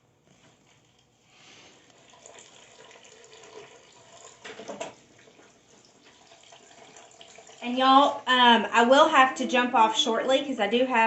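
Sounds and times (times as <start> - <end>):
tap water filling container: 1.7 - 8.2.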